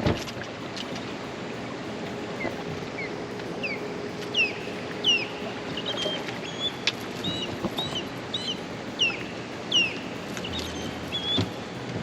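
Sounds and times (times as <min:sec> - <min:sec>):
faint steady hum: 0:00.0 - 0:12.0
open-water ambience: 0:00.0 - 0:12.0
bird chirping: 0:02.4 - 0:11.7.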